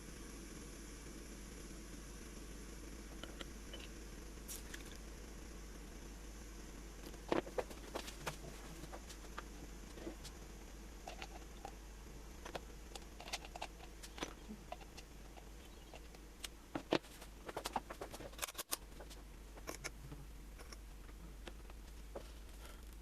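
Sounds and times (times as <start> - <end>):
steady low hum: 0.0 - 23.0
small parts clicking and tapping: 11.0 - 11.8, 12.4 - 20.0.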